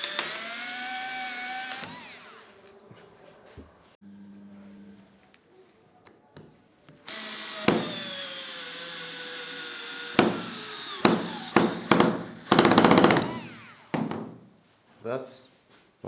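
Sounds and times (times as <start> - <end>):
cordless screwdriver motor whining: 0.0 - 2.5, 7.1 - 11.6, 13.0 - 13.9.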